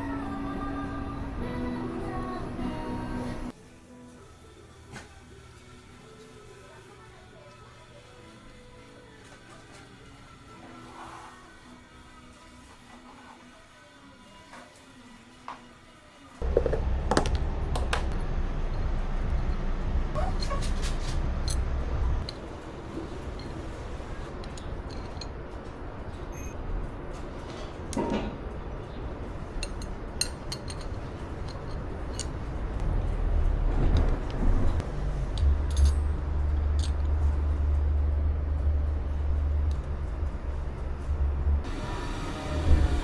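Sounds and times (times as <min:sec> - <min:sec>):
steady low hum: 0:00.0 - 0:03.6, 0:16.4 - 0:43.0
metal tools clinking: 0:20.2 - 0:26.5, 0:29.5 - 0:32.6, 0:34.7 - 0:37.2.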